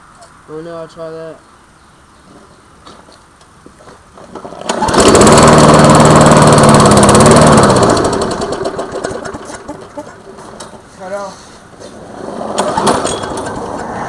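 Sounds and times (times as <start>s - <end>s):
lawn mower engine running: 4.1s - 11.2s, 12.0s - 14.0s.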